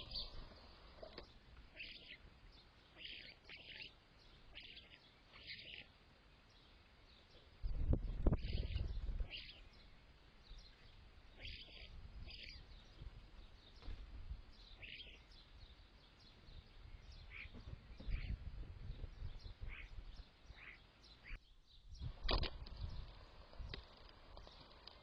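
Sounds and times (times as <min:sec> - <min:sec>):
garden birds chirping: 0:00.0 - 0:25.0.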